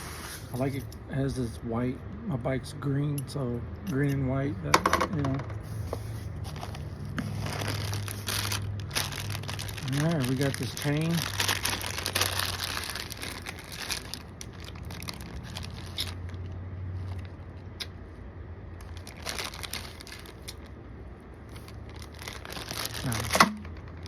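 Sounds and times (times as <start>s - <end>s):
low steady hum: 0.0s - 24.0s
plastic packaging crinkling: 6.3s - 17.4s, 18.8s - 20.7s, 21.4s - 24.0s.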